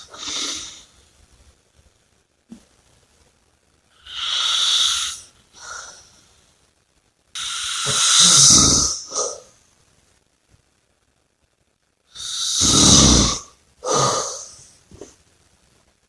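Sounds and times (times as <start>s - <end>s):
snoring with low rattle: 0.0s - 0.8s, 7.4s - 9.4s, 12.2s - 15.1s.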